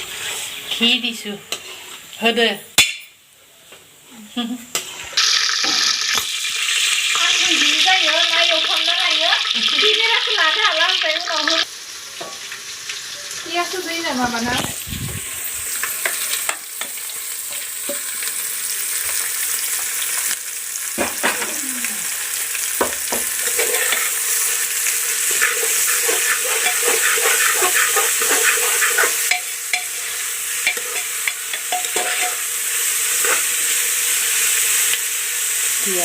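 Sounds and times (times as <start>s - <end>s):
spatula scraping a pan: 0.0s - 2.1s, 23.4s - 24.5s, 25.2s - 32.4s, 33.0s - 33.6s
onion sizzling in a pan: 0.0s - 36.0s.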